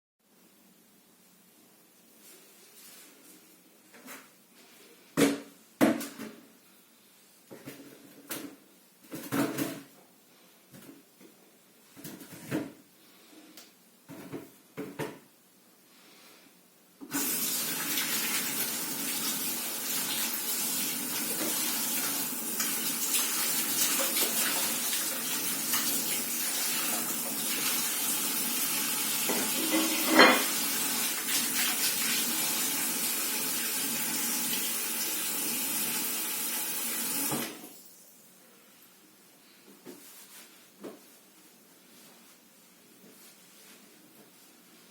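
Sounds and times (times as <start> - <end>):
tap water running into sink: 17.1 - 37.7
kitchen clatters: 29.3 - 30.6.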